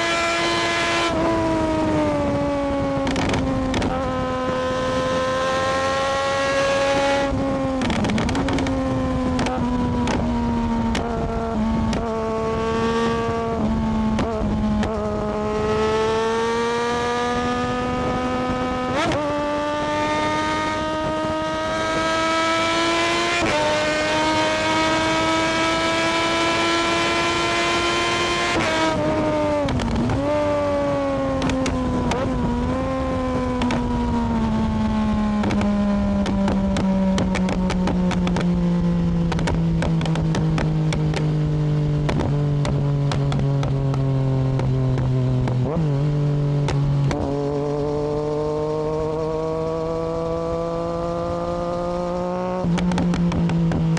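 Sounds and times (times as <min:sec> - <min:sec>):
motorcycle engine accelerating: 0:00.0 - 0:53.9
exhaust pops and crackles: 0:02.2 - 0:04.4, 0:07.3 - 0:12.2, 0:13.6 - 0:15.2, 0:28.6 - 0:30.5, 0:31.2 - 0:34.6, 0:35.2 - 0:41.4, 0:42.0 - 0:45.8, 0:46.6 - 0:48.0, 0:52.6 - 0:53.9.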